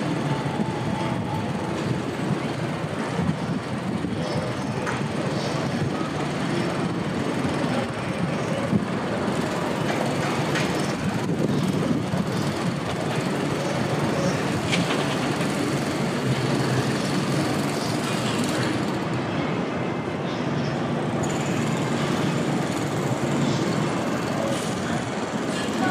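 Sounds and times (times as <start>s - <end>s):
rumbling city noise: 0.0s - 25.9s.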